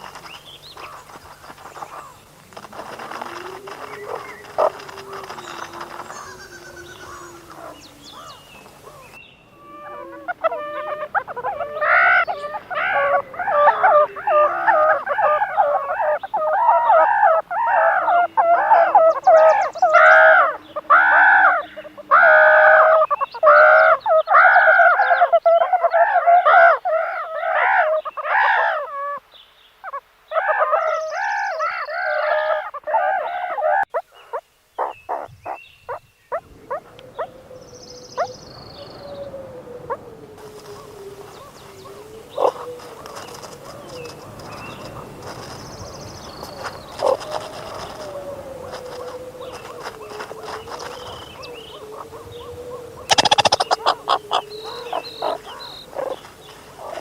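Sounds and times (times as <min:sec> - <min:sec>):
meerkat calling: 0:01.8 - 0:29.2, 0:41.9 - 0:44.2, 0:46.6 - 0:56.2.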